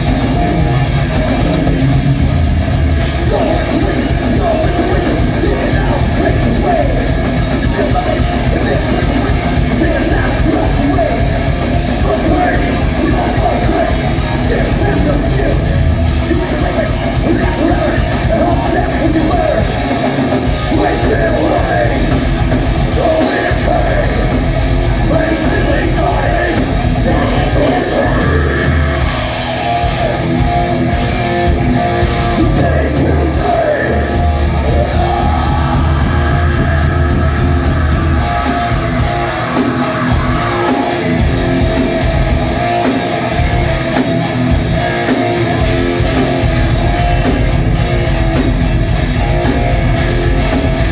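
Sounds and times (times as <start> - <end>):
live heavy rock band: 0.0 - 50.9
sung and shouted vocals: 3.0 - 30.4, 32.3 - 42.3.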